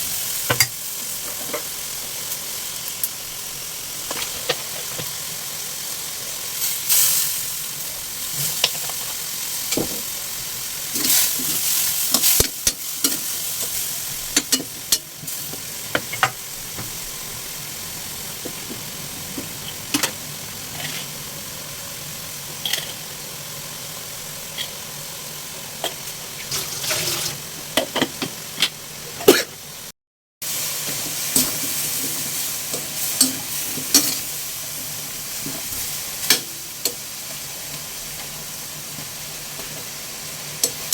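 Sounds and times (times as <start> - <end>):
food sizzling in a frying pan: 0.0 - 40.9
spatula scraping a pan: 19.5 - 21.2, 22.6 - 23.0.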